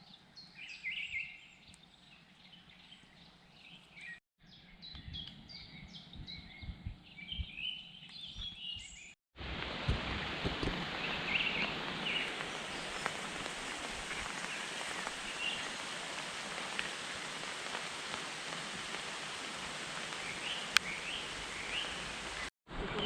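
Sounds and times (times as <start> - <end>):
rain patter: 9.4 - 22.5.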